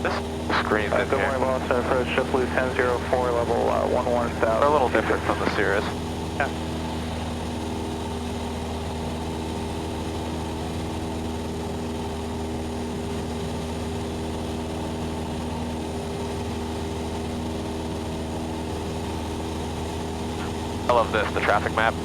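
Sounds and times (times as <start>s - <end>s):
aircraft engine droning in cabin: 0.0s - 22.0s.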